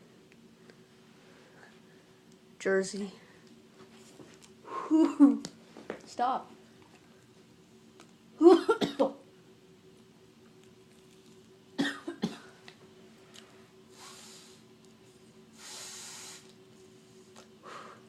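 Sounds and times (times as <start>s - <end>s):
person coughing: 8.4s - 9.2s, 11.8s - 12.6s
breathy exhales: 13.9s - 14.6s, 15.6s - 16.5s, 17.6s - 18.0s.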